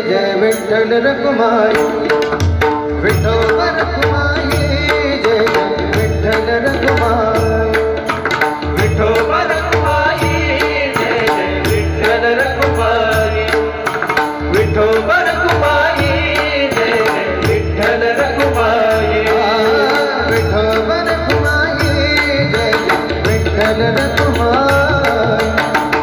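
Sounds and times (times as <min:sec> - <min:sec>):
hand drum rhythm: 0:01.7 - 0:26.0.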